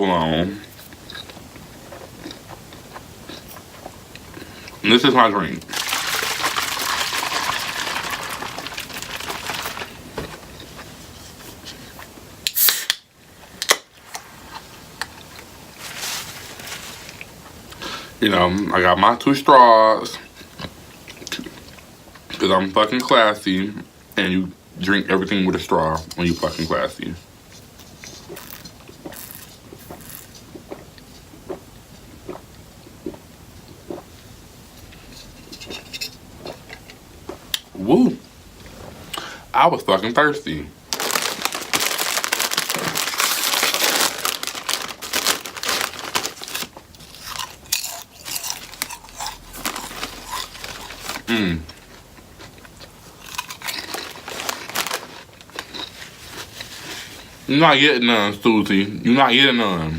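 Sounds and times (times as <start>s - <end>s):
cup and straws rustling: 5.7s - 12.0s, 15.8s - 17.3s, 27.6s - 30.5s, 40.9s - 51.4s, 53.5s - 57.4s
person swallowing gulps: 28.2s - 34.2s.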